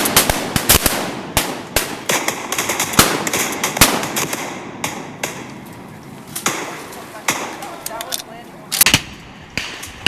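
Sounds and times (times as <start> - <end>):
shotgun shots echoing: 0.0 - 5.6, 6.4 - 7.8, 8.7 - 10.0.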